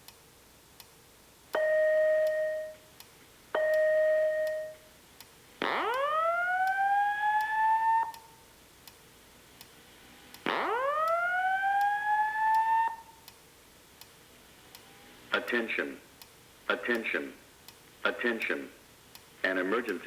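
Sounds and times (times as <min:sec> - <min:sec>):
rising whoop evacuation tone: 0:05.6 - 0:08.3, 0:10.5 - 0:13.2.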